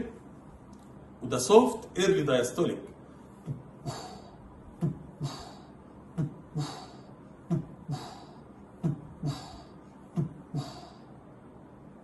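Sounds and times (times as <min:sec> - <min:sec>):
soft heart murmur hiss: 0:03.1 - 0:11.1.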